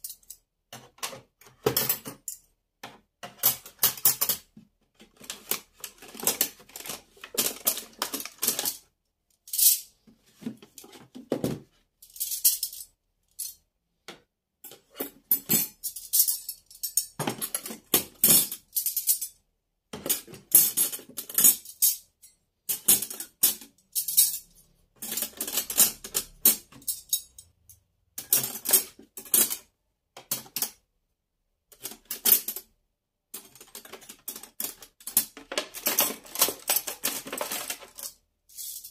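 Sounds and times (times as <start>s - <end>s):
household objects clattering: 0.0s - 8.9s, 9.6s - 11.8s, 33.4s - 38.9s.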